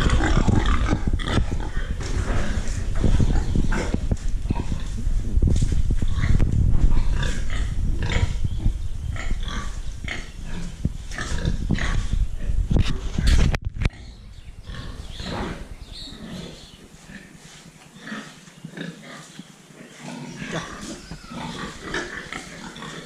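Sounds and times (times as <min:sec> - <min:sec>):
pigs grunting and squealing: 0:00.0 - 0:05.0, 0:13.9 - 0:17.3, 0:18.0 - 0:23.0.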